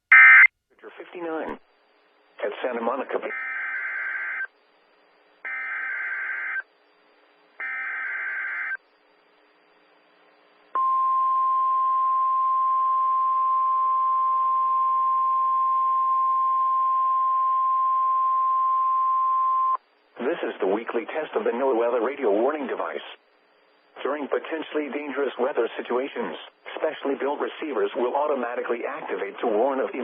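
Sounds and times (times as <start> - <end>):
steady warning alarm tone: 5.4 - 6.7, 7.6 - 8.8.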